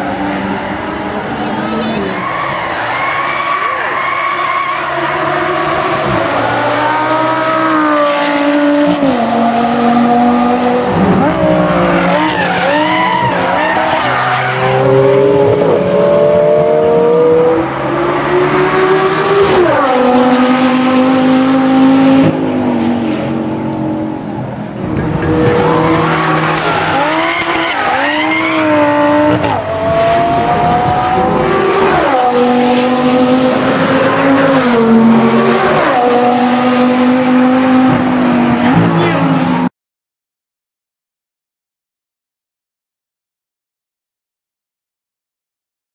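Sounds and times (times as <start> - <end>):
car engine revving: 4.9 - 39.7.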